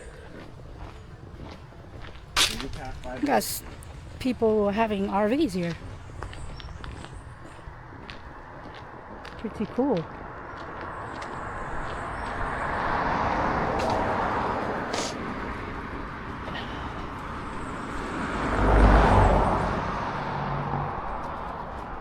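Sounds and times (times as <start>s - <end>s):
cars driving past: 0.0s - 22.0s
car passing with low rumble: 5.6s - 22.0s.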